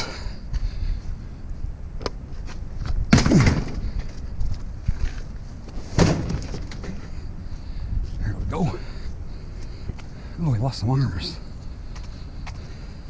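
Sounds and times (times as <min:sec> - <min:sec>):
heavy item knocking and thumping: 0:05.9 - 0:07.0.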